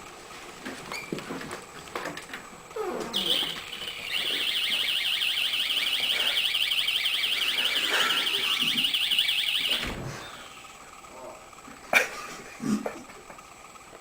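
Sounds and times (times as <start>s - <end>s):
warbling alarm siren: 3.1s - 11.1s
short high beep: 3.2s - 5.1s.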